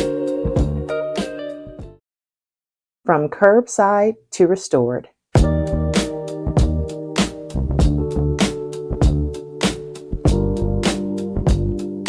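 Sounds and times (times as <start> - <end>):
upbeat funk music: 0.0 - 2.0, 5.4 - 12.0.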